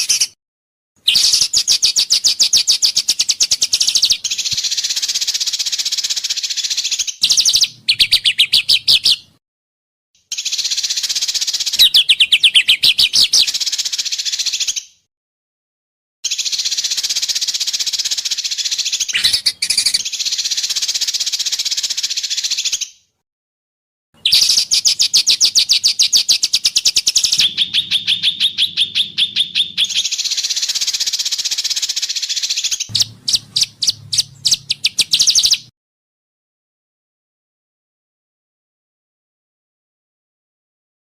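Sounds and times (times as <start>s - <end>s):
songbird trills: 1.0s - 9.4s, 10.2s - 15.0s, 16.3s - 23.1s, 24.2s - 35.7s.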